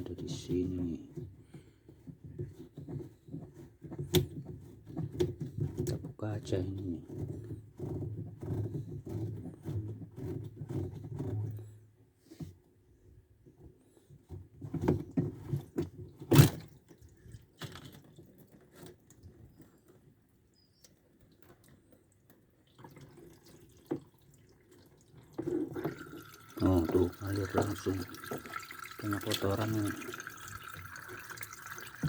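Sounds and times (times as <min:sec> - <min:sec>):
clicks and knocks of plastic parts: 0:01.0 - 0:11.8, 0:13.5 - 0:20.1.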